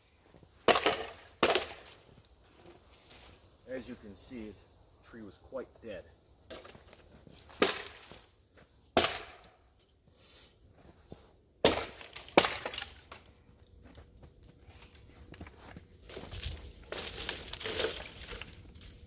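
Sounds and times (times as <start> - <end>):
axe chopping wood: 0.6 - 2.0, 7.4 - 8.2, 8.9 - 9.6, 11.6 - 13.2
wood splintering crackle: 6.5 - 9.5, 11.6 - 15.0, 16.0 - 19.0.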